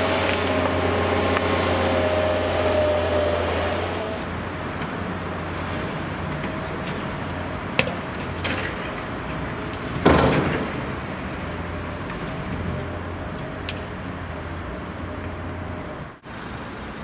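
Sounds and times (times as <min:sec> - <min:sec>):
diesel machinery running: 0:00.0 - 0:10.0.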